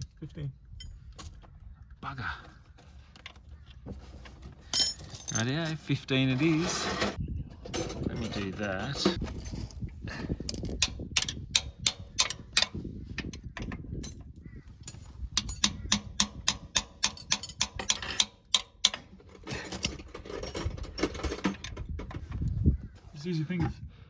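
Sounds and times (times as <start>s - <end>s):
ratchet spanner clicking: 15.4s - 19.0s.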